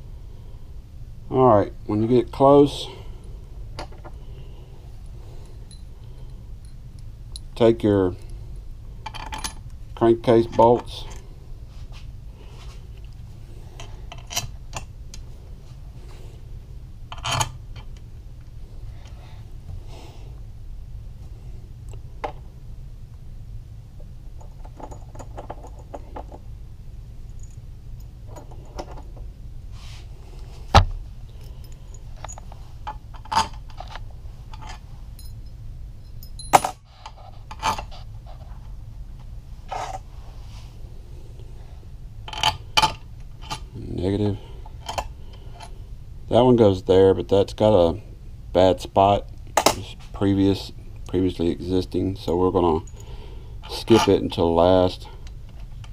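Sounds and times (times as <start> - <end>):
metal bolts clinking and jingling: 5.4 - 8.4, 9.0 - 11.3, 17.1 - 17.9, 31.4 - 37.9.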